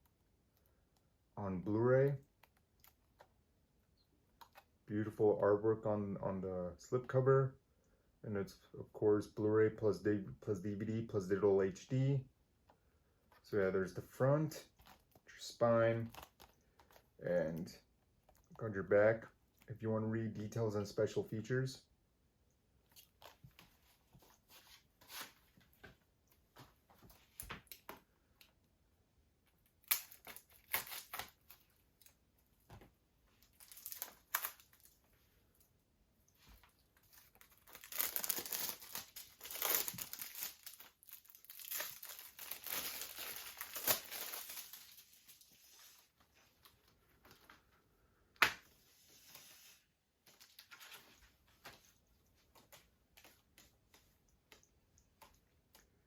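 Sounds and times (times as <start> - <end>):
plastic shrink-wrap tearing: 29.8 - 31.6, 33.5 - 35.0, 37.0 - 45.4
plastic crinkling: 33.4 - 35.0, 36.4 - 46.7.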